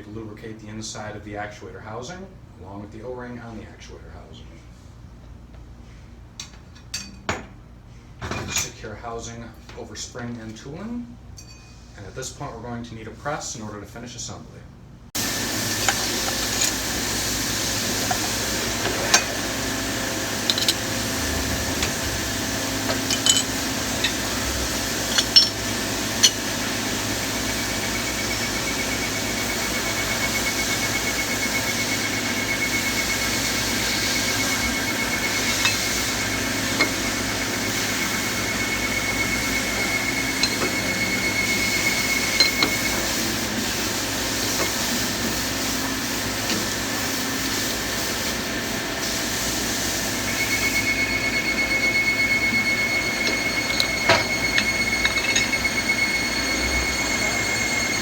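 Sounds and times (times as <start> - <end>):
metallic clinks and knocks: 15.8 - 16.8, 20.4 - 21.0, 22.8 - 26.4, 39.7 - 40.8, 53.0 - 56.0
thin high whine: 18.0 - 31.3, 50.2 - 58.0.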